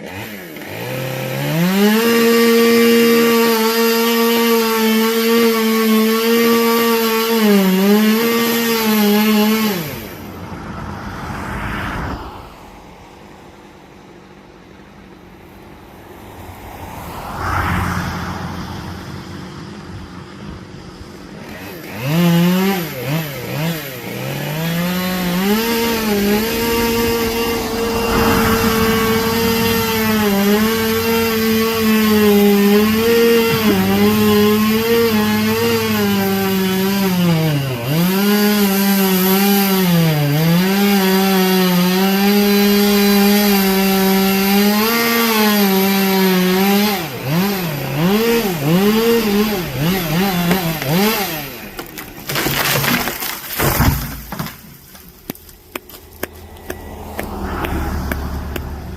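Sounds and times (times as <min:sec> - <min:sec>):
chainsaw cutting wood: 0:00.0 - 0:10.4, 0:20.2 - 0:58.9
loud crack or crash: 0:26.5 - 0:31.8.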